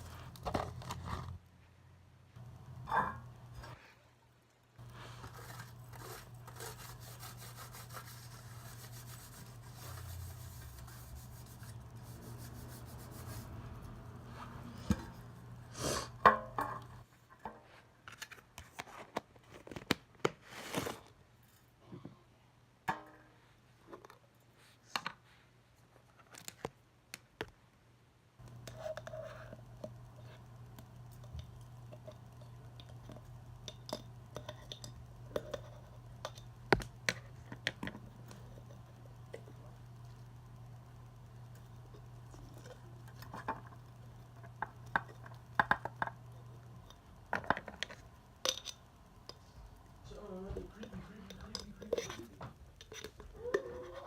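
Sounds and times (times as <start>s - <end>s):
steady low hum: 0.0s - 17.1s, 28.4s - 54.0s.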